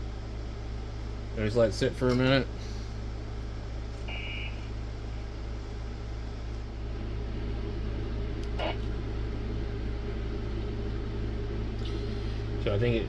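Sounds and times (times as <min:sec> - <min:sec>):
fan motor humming: 0:00.0 - 0:13.0
short high beep: 0:04.1 - 0:04.6.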